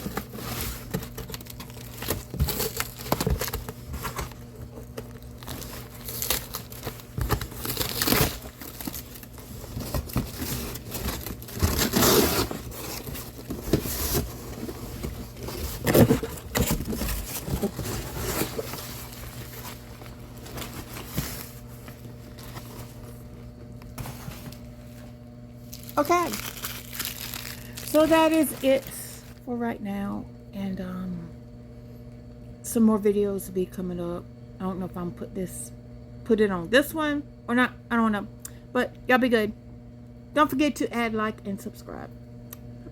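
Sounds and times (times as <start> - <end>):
cardboard tearing and crinkling: 0.0 - 23.2, 25.7 - 29.4.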